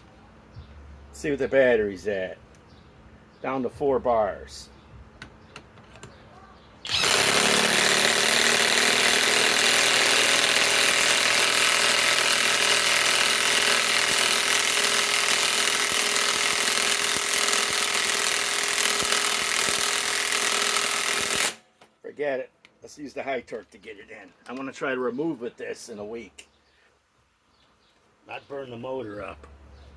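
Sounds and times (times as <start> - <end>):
impact wrench hammering: 6.9 - 21.6.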